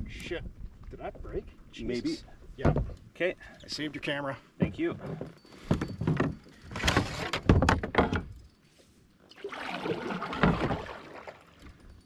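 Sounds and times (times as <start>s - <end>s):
water swishing: 9.3s - 11.9s.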